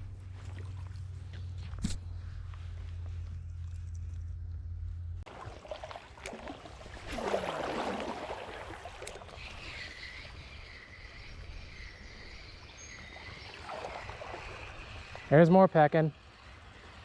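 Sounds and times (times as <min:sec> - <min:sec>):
water splash: 0:05.3 - 0:09.4, 0:13.3 - 0:15.3
flowing river water: 0:05.3 - 0:17.0.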